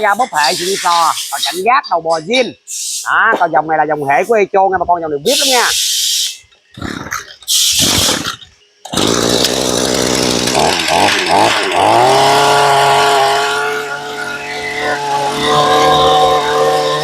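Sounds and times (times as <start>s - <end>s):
rasping pull-start noise: 7.7s - 17.0s
brush cutter engine starting and revving: 7.8s - 17.0s.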